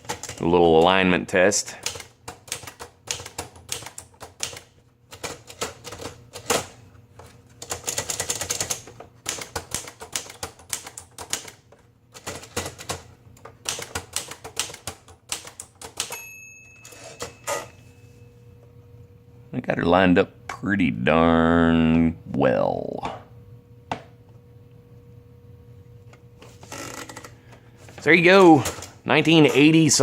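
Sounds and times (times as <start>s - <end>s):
typewriter keystroke clacks: 0.0s - 0.9s, 1.8s - 6.7s, 7.6s - 11.6s, 12.2s - 16.2s
typewriter margin bell ding: 16.0s - 18.2s.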